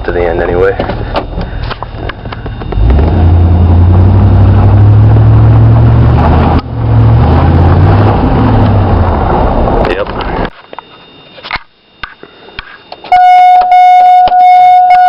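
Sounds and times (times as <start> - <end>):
truck engine revving: 2.7 - 9.8.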